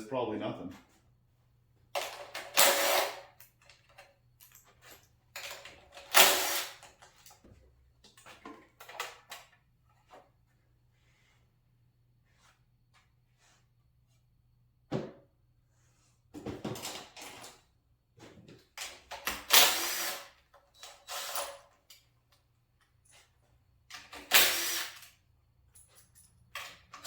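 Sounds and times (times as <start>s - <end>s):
tools and parts clinking: 1.9s - 10.2s, 20.5s - 27.0s
power tool bursts: 2.6s - 3.2s, 6.1s - 6.8s, 19.4s - 20.3s, 24.2s - 25.0s.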